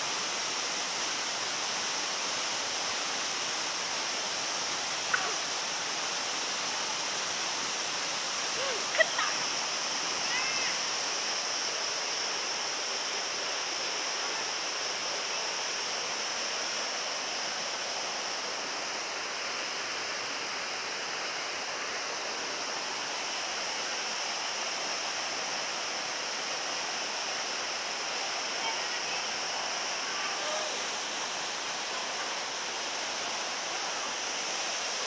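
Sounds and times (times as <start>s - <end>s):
waterfall rushing: 0.0s - 35.0s.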